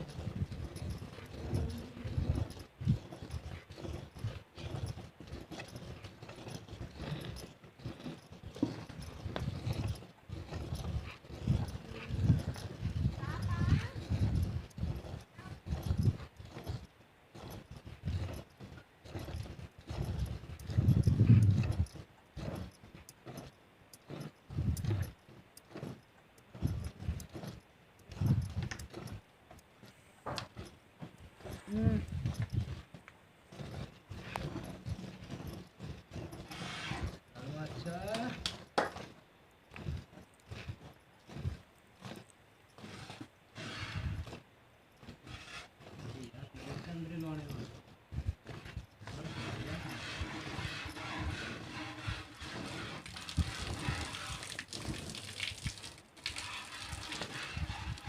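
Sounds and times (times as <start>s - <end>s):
milk squirting into pail: 52.5s - 58.0s.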